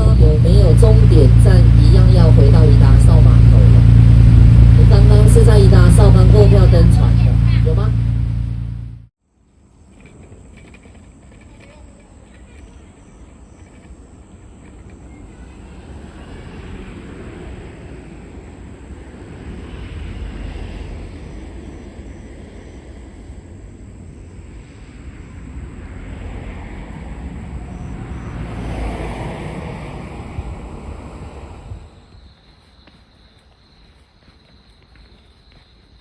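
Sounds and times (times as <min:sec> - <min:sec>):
wind buffeting microphone: 0:00.0 - 0:09.0, 0:12.0 - 0:32.3
boat motor running: 0:00.0 - 0:09.1
water rushing past hull: 0:00.0 - 0:09.1.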